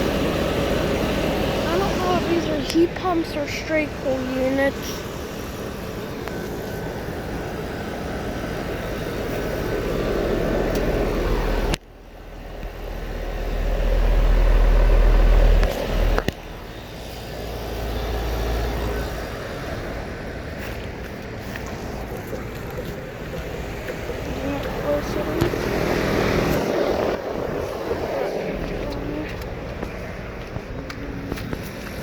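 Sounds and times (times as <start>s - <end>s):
air-conditioner fan whir: 0.0s - 32.0s
wind rumble on microphone: 19.2s - 32.0s.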